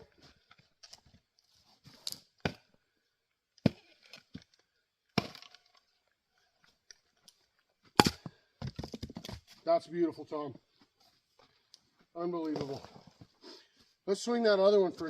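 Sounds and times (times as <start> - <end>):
axe striking firewood: 2.0 - 2.8, 3.6 - 4.4, 5.1 - 5.7, 8.0 - 9.4.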